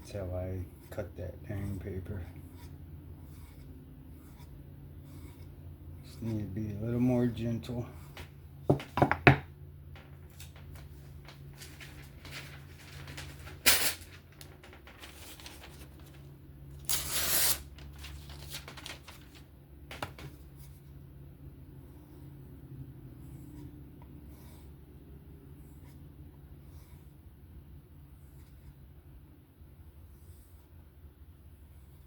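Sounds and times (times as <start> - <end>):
knife slicing through paper: 16.8 - 19.3.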